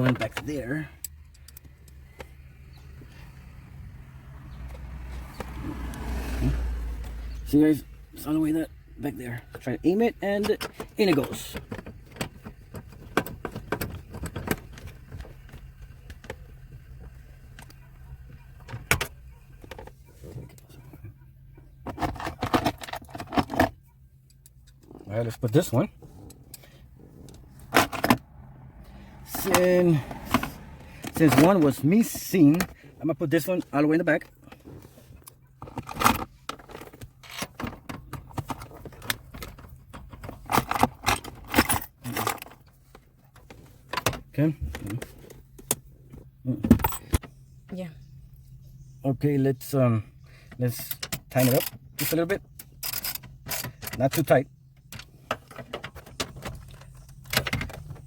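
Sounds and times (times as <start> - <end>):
metal bolt clinking and scraping: 21.7 - 28.2, 33.4 - 45.9, 46.7 - 47.2, 50.6 - 58.0.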